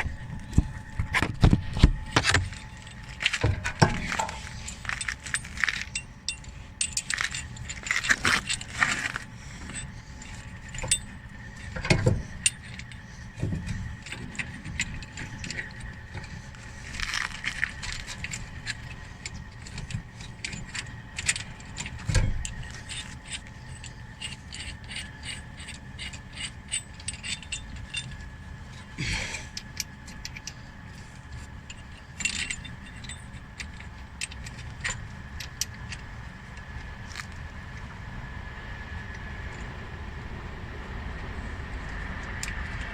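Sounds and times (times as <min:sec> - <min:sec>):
ratchet clicking: 0:03.8 - 0:28.3.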